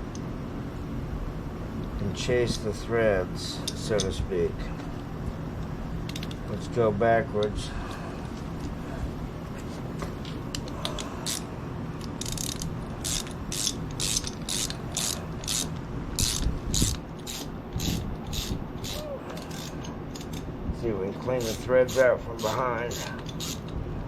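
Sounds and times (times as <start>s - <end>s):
ratchet wrench clicking: 10.5s - 20.4s, 21.3s - 23.8s.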